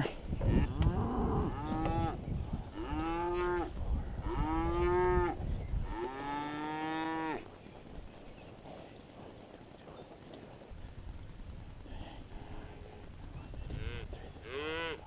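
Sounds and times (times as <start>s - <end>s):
cattle mooing: 0.4s - 7.5s, 13.7s - 15.0s.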